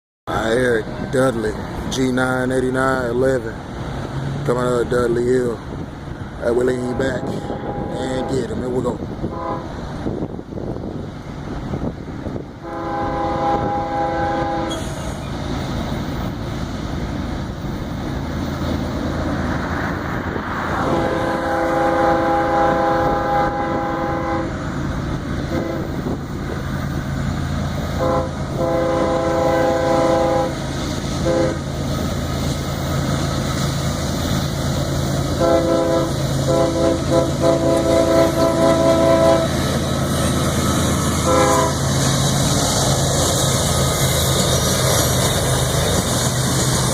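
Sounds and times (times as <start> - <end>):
diesel locomotive engines rumbling: 0.3 - 46.9
locomotive air horn blasts: 6.7 - 9.9, 12.6 - 15.2, 20.8 - 24.6, 25.5 - 26.2, 28.0 - 30.6, 31.2 - 31.7, 35.3 - 39.7, 41.1 - 42.0.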